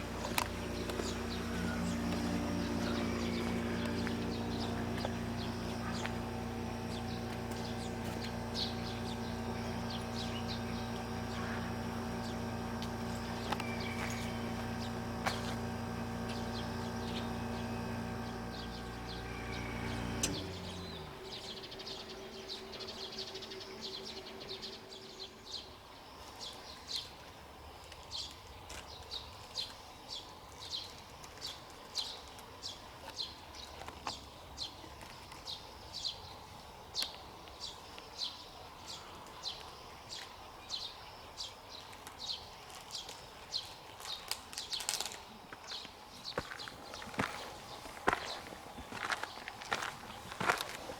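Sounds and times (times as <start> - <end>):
bird chirping: 0.0 - 27.0
mechanical hum: 0.0 - 28.3, 42.2 - 50.9.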